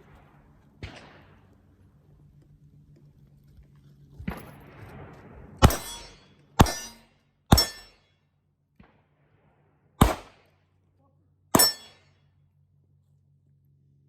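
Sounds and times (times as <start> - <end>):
gunshots: 4.3 - 8.0, 10.0 - 10.4, 11.6 - 12.0.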